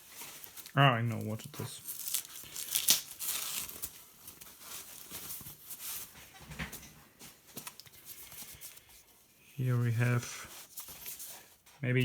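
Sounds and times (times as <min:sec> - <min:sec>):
box packaging rustling and clicking: 0:00.0 - 0:09.1.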